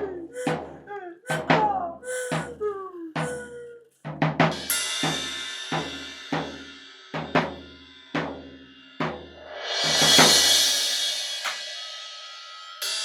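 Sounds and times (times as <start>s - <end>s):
cymbal crash: 8.7s - 13.0s.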